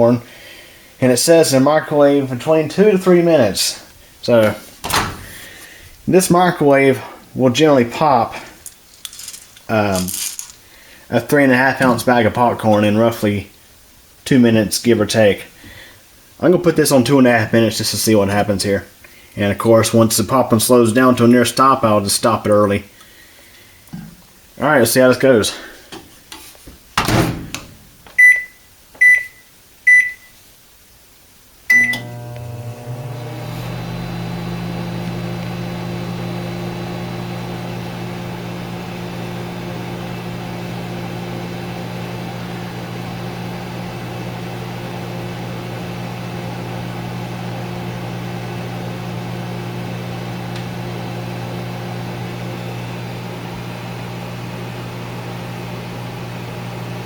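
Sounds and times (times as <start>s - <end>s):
microwave keypad beeping: 28.2s - 30.3s, 31.7s - 32.0s
microwave oven humming: 31.7s - 57.0s.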